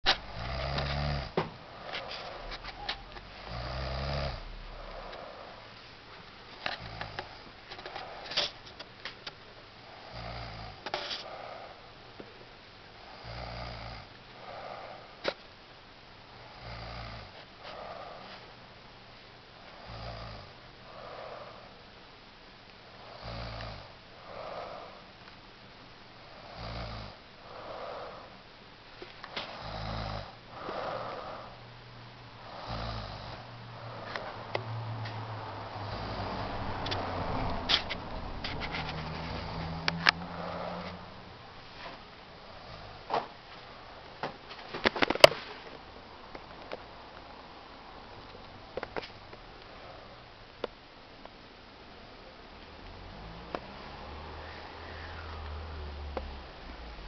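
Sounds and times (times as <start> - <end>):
man snoring heavily: 0.1 - 5.7, 6.7 - 8.6, 9.8 - 11.8, 13.0 - 15.3, 16.4 - 18.3, 19.7 - 21.7, 23.0 - 25.1, 26.2 - 28.4, 29.3 - 31.6, 32.4 - 37.9, 39.0 - 41.2, 42.4 - 43.3
airy breath out: 24.2 - 25.1, 27.4 - 28.4, 29.0 - 31.7.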